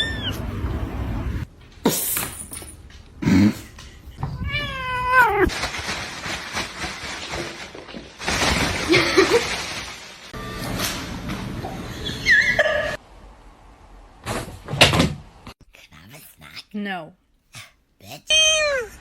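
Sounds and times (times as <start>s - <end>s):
cat meowing: 0.0s - 0.4s.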